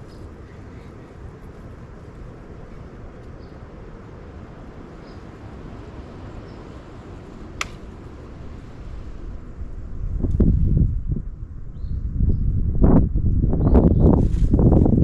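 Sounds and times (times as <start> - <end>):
low outdoor rumble: 0.0 - 15.0
sharp click: 7.6 - 7.8.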